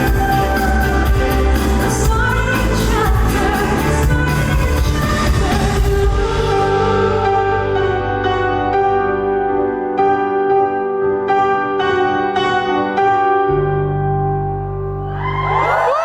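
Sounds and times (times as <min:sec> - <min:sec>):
female lead vocal: 0:00.0 - 0:08.2
live pop ballad band: 0:00.0 - 0:09.8
held keyboard chords: 0:00.0 - 0:15.7.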